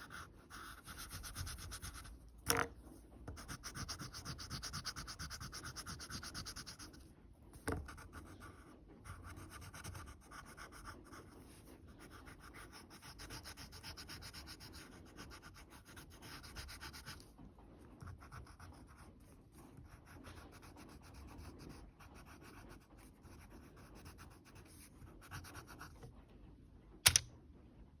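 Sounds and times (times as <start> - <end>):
pencil scratching on paper: 0.0 - 2.2, 3.3 - 7.0, 7.7 - 17.2, 18.0 - 26.1
sharp loud click: 27.0 - 27.3.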